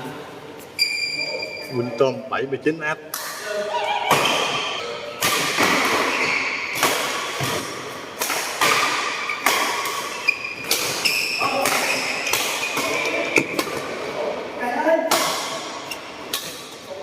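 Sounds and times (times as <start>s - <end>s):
racket striking shuttlecock: 4.1s - 13.8s.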